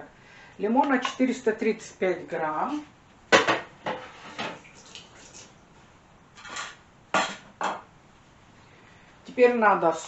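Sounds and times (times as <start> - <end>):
dishes and utensils clinking: 6.4 - 7.9.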